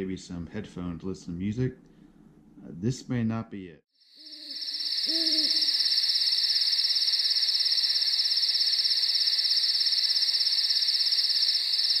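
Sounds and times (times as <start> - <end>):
crickets chirping: 4.0 - 12.0.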